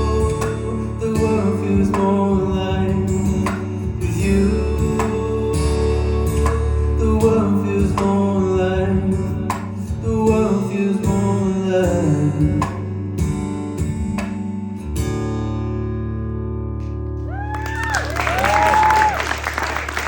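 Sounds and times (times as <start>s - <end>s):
acoustic guitar playing: 0.0s - 17.3s.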